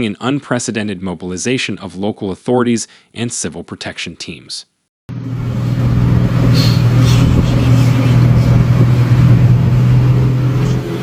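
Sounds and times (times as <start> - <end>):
motor engine running: 5.1 - 11.0
broad rushing noise: 5.2 - 11.0.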